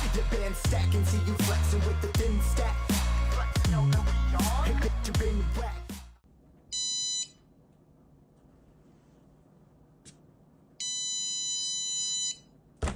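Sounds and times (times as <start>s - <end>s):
electronic buzzer beeping: 10.8s - 12.5s.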